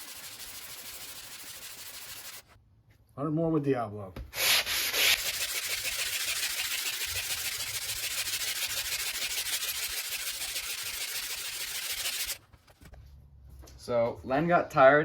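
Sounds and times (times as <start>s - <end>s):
mesh abrasive sanding a surface: 0.0s - 2.5s, 4.4s - 12.4s.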